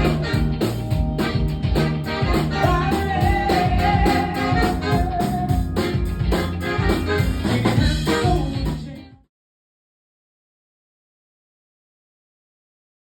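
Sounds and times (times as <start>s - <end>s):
drum kit beat: 0.0s - 9.0s
band playing upbeat music: 0.0s - 9.1s.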